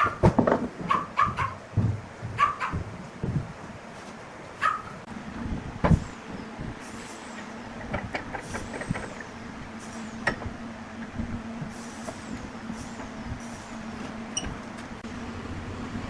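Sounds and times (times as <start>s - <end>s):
scattered clicks and knocks: 0.0s - 4.2s, 7.4s - 9.4s, 10.2s - 11.1s
heavy knock: 0.2s - 3.6s.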